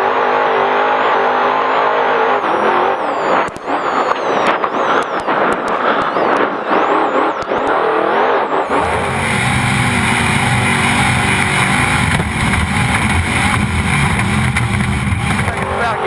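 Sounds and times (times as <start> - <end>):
truck engine running hard: 6.8 - 16.0.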